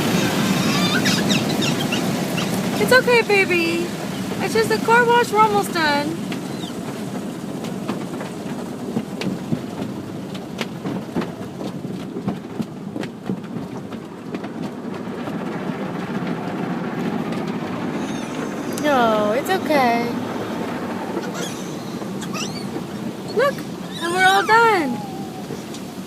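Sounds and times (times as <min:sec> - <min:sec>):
water spraying on car body: 0:00.0 - 0:26.0.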